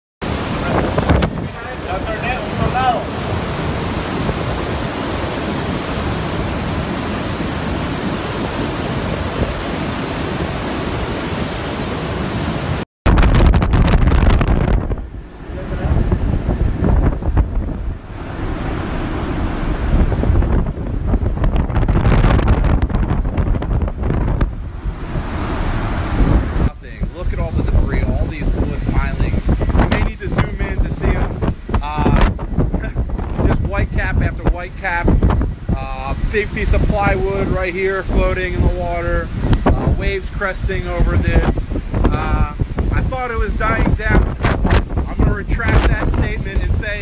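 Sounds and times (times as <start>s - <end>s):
waves rushing: 0.2s - 47.0s
wind gusts buffeting microphone: 0.2s - 47.0s.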